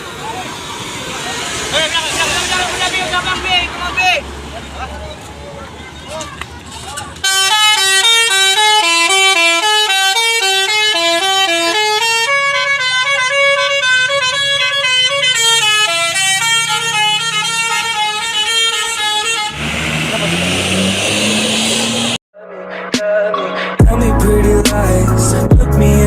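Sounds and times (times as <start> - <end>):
musical bus horn playing tune: 7.2 - 20.7.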